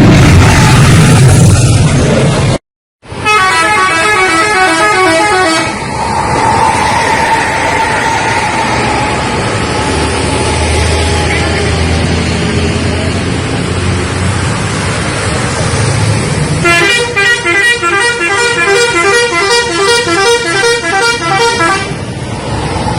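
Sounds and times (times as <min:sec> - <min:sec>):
bus engine: 0:00.0 - 0:22.9
road noise: 0:00.0 - 0:22.9
multi-tone bus horn melody: 0:03.1 - 0:05.8, 0:16.6 - 0:22.2.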